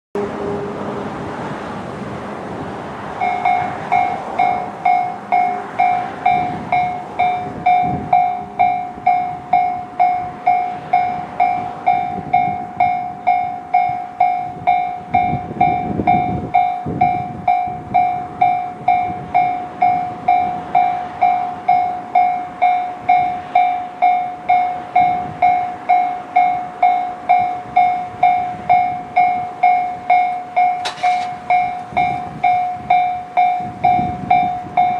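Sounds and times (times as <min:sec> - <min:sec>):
traffic noise: 0:00.2 - 0:34.9
level crossing electronic bell: 0:03.2 - 0:34.9.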